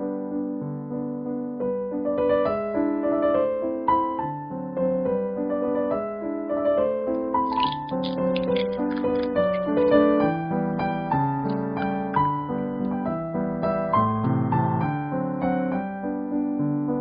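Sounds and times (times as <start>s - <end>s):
gentle piano music: 0.0s - 17.0s.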